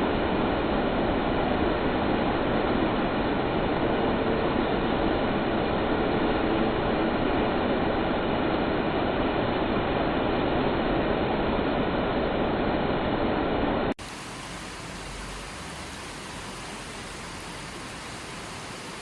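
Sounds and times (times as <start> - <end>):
stream rushing over rocks: 14.0 - 19.0.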